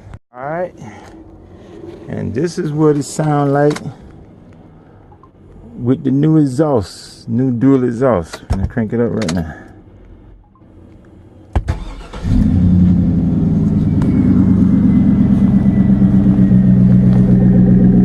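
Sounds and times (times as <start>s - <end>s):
engine starter cranking: 11.6s - 12.9s
truck engine idling: 11.7s - 18.0s.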